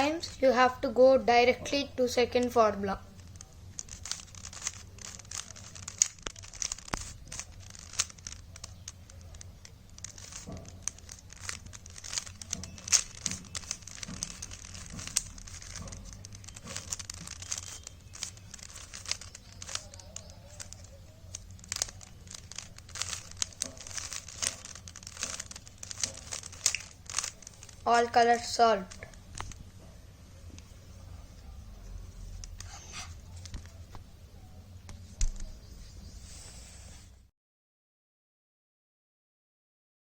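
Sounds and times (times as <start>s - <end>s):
plastic puzzle cube clicking: 3.2s - 29.6s.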